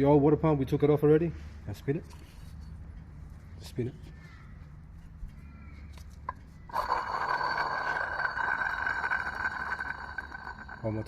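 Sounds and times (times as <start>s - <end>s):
water pump whirring by hand: 6.7s - 11.0s.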